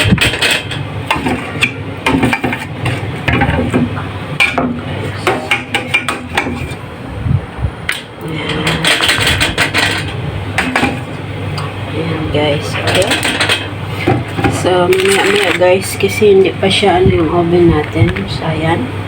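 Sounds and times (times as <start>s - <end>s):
utensils clattering on a tray: 0.0s - 6.8s, 7.9s - 11.2s, 12.6s - 16.4s
steady low hum: 0.0s - 19.0s.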